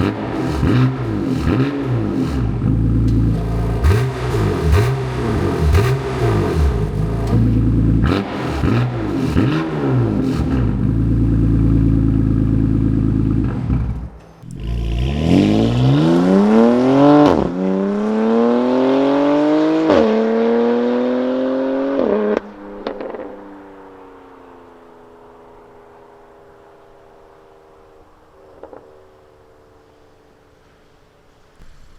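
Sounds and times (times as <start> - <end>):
car engine revving and accelerating: 0.0 - 24.3.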